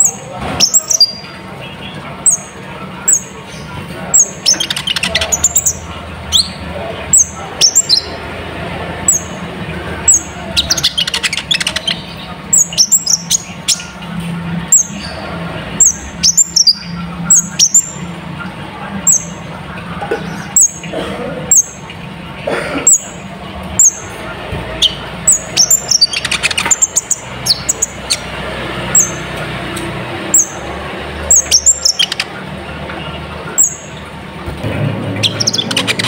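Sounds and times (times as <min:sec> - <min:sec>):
bird chips and rattling trills: 0:35.2 - 0:36.0.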